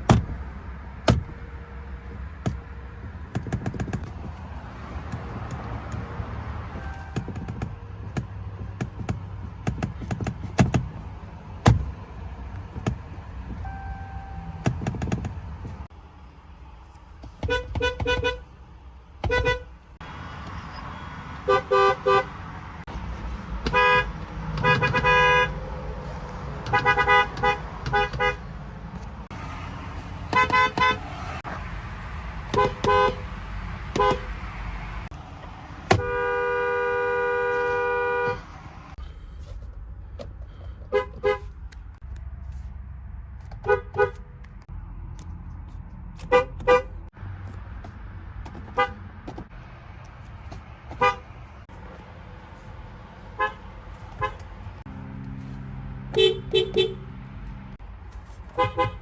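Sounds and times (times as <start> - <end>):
car horns honking: 5.3 - 8.5, 13.4 - 15.6, 17.4 - 18.5, 19.2 - 22.5, 23.6 - 25.7, 26.5 - 29.0, 30.2 - 31.3, 32.5 - 34.5, 35.8 - 39.0, 40.9 - 41.6, 43.6 - 44.4, 46.2 - 47.2, 48.6 - 49.4, 50.9 - 51.7, 53.3 - 57.5, 58.5 - 59.0.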